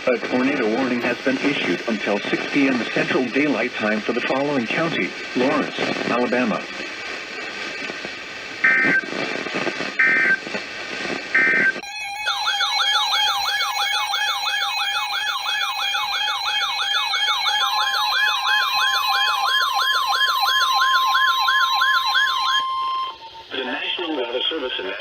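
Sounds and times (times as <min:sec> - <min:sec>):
electronic siren alert rising: 0:11.4 - 0:23.3
steady warning tone: 0:11.4 - 0:23.6.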